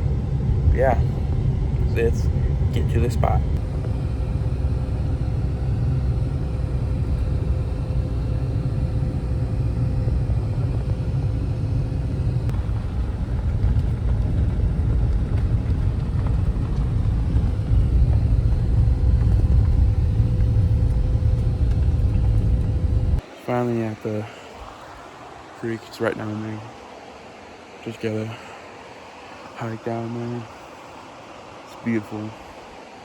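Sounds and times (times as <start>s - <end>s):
car engine and road noise: 0.0s - 23.3s.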